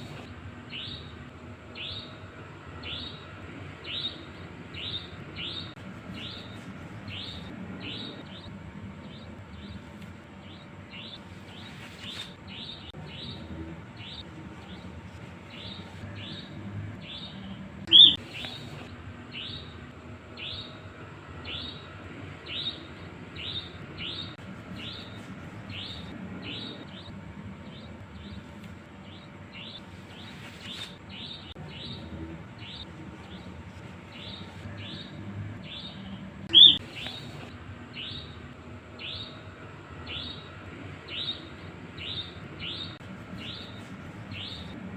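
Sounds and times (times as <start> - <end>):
nightjar calling: 15.5 - 19.8, 34.1 - 38.4, 39.0 - 39.4, 40.0 - 44.8.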